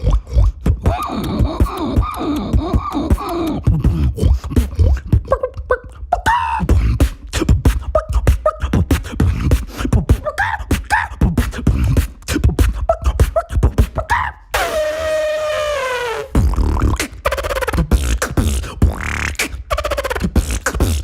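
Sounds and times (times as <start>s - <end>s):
beatboxing: 0.0s - 21.0s
vocal squeaks and gliding calls: 14.6s - 18.3s.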